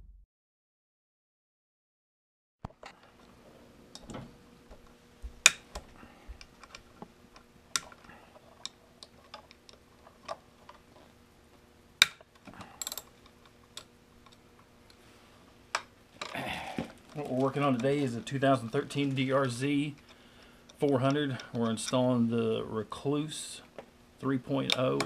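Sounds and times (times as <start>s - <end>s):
faint electrical hum: 2.7s - 25.0s
tools clicking on a workbench: 12.0s - 14.4s.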